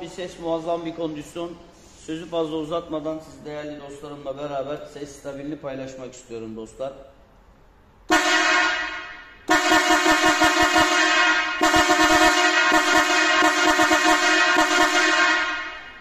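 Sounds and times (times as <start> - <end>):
electric horns blasting: 8.0 - 16.0.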